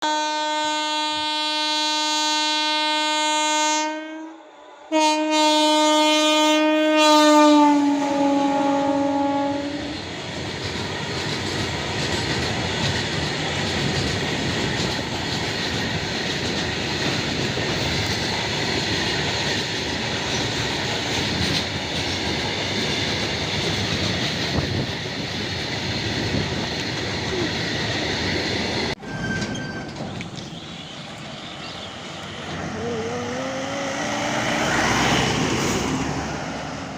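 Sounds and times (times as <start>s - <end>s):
locomotive air horn blasts: 0.0s - 10.0s
train wheels clattering on rails: 9.9s - 32.7s.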